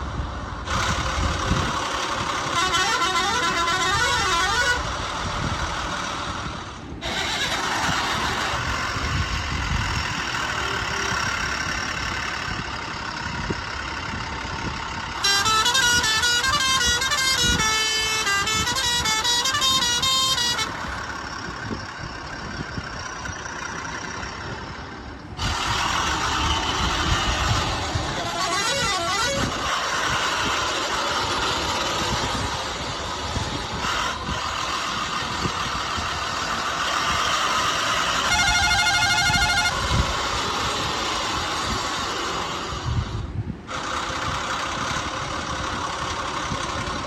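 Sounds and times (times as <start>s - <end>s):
engine running: 0.0s - 47.0s
horn honking: 2.1s - 5.3s, 7.0s - 9.2s, 10.1s - 11.8s, 15.1s - 21.2s, 25.4s - 32.6s, 33.4s - 42.8s.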